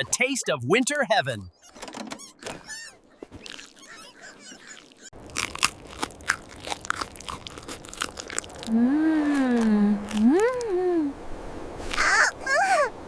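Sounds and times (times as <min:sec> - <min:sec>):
crisp crunching bites: 0:04.6 - 0:10.7.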